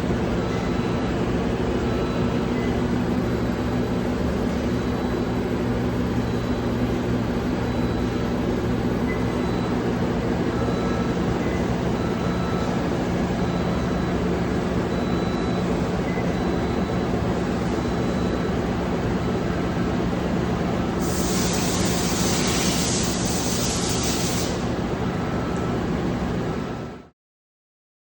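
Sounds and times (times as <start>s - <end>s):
machine hum with whining tones: 0.0s - 27.1s
loud hiss: 21.0s - 24.7s.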